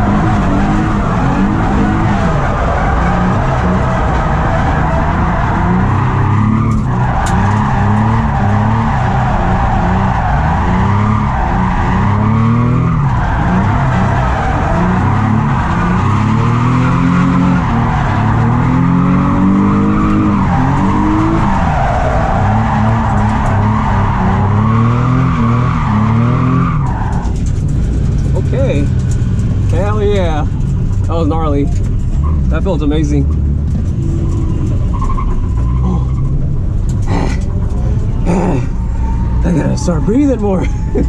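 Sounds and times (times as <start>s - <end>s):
tyre squeal: 0.0s - 27.4s
car engine at full throttle: 0.0s - 41.0s.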